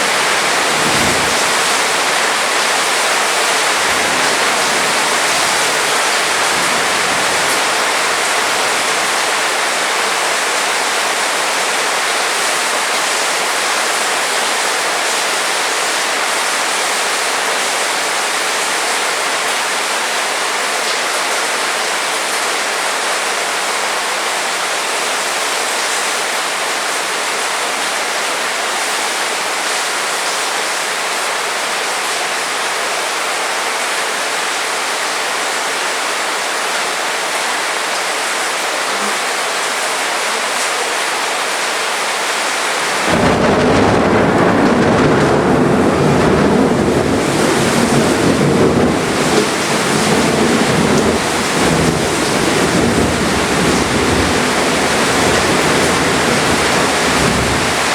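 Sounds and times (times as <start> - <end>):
rumble of thunder: 0.0 - 9.2, 42.9 - 57.9
heavy rain falling: 0.0 - 57.9.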